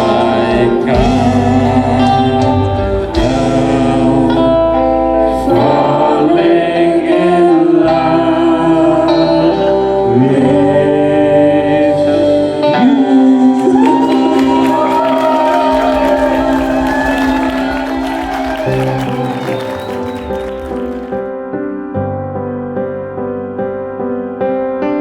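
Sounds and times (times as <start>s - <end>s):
choir-like song with instruments: 0.0s - 21.2s.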